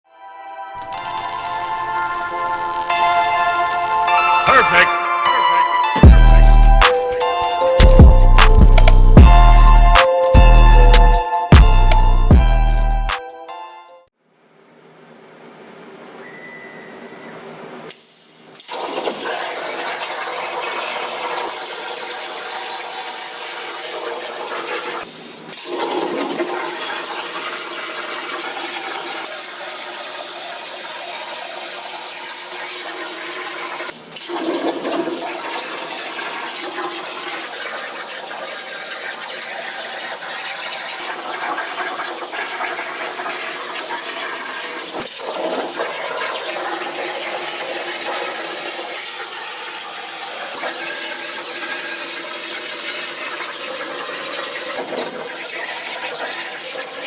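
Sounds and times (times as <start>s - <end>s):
plasma cutter hissing: 0.8s - 4.9s.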